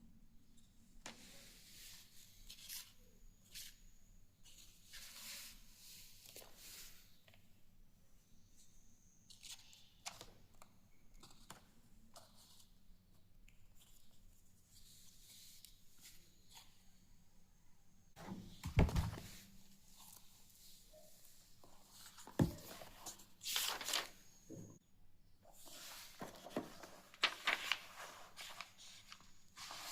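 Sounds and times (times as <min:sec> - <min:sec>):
paper rustling and crinkling: 0:21.6 - 0:24.3, 0:25.6 - 0:29.9.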